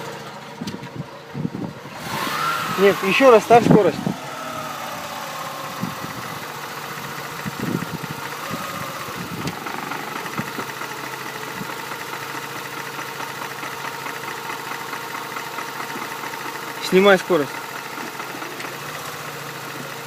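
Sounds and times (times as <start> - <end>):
rotary engine idling: 1.8 - 20.0.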